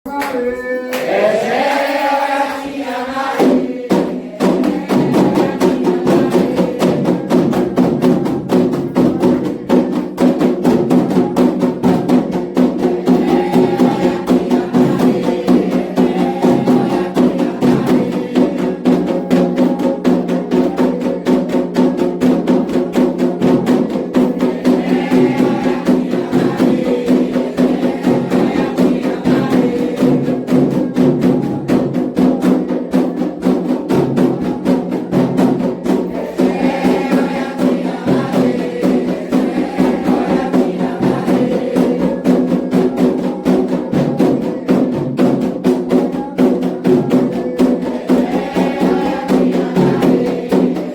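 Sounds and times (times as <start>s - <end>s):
person singing: 0.1s - 10.3s, 10.9s - 22.2s
hand drums: 0.1s - 50.9s.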